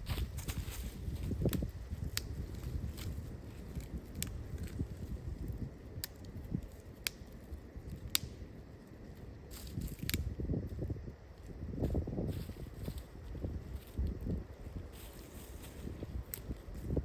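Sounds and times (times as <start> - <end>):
wind rumbling: 0.0 - 17.0
sharp clicks or crackles: 7.9 - 8.4, 9.6 - 10.3.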